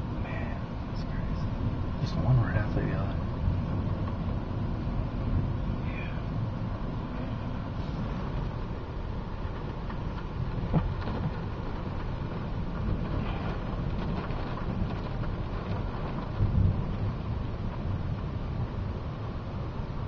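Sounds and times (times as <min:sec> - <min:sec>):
rain: 0:00.0 - 0:20.0
wind noise: 0:03.1 - 0:19.3
thunder rumbling: 0:09.6 - 0:18.7.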